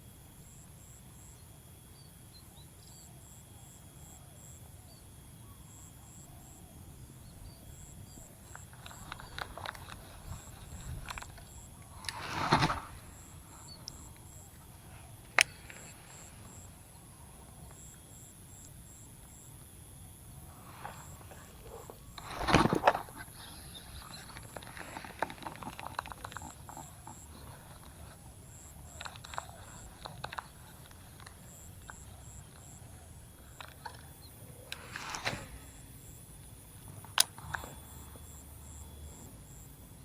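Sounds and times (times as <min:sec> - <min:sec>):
insect chirping in pulses: 0:00.0 - 0:40.0
sharp click: 0:33.5 - 0:35.9.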